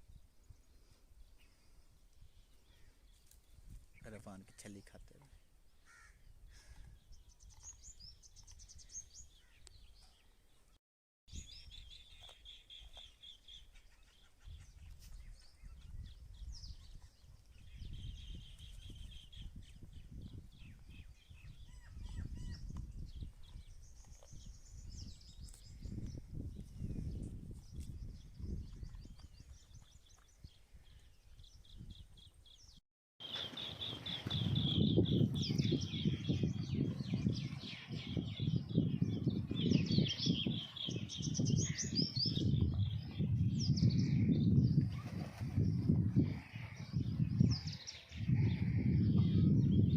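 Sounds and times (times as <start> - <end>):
birds chirping and calling: 11.3 - 49.9.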